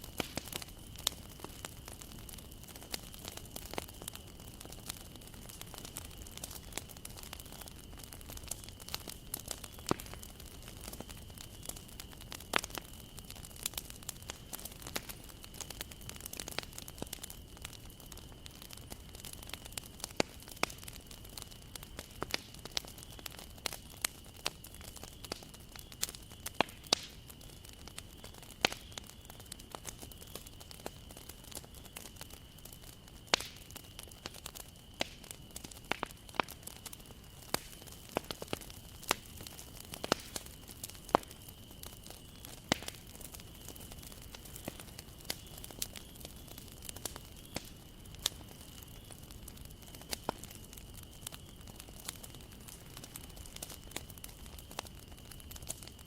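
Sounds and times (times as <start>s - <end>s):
bonfire crackling and popping: 0.0s - 56.0s
low hiss of burning: 0.0s - 56.0s.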